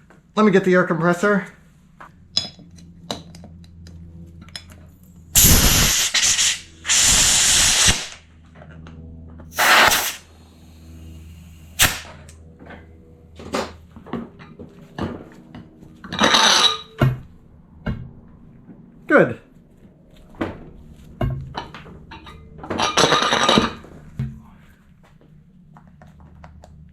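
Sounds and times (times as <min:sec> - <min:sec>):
low steady hum: 0:00.0 - 0:26.9
compressed air hissing: 0:05.4 - 0:08.2, 0:09.5 - 0:12.2.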